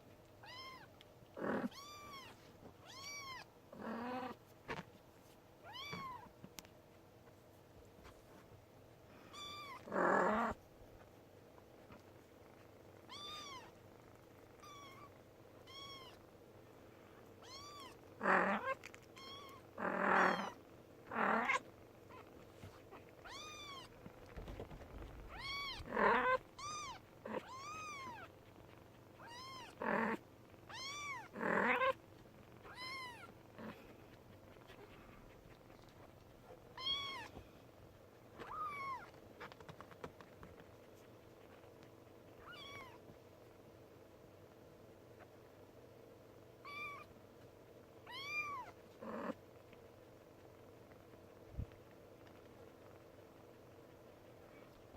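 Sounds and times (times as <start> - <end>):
kitten mewing: 17.4 - 28.3, 29.2 - 32.0, 38.4 - 39.8, 42.4 - 43.0.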